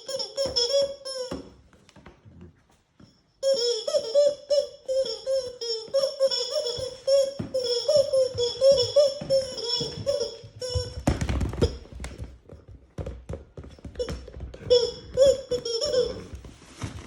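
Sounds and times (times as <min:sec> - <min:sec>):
squeaky toy squeaking: 0:00.0 - 0:01.5, 0:03.4 - 0:11.9, 0:14.0 - 0:16.5
puppy chewing toy: 0:13.8 - 0:16.6
soft rustles: 0:15.4 - 0:17.0.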